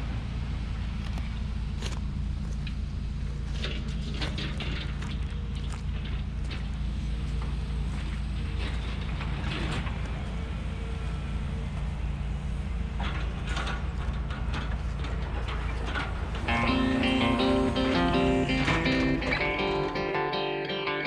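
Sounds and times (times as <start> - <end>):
demolition machinery engine running: 2.5 - 21.0
rubble and steel clanking: 3.3 - 10.4, 11.6 - 20.4
guitar music: 16.5 - 21.0.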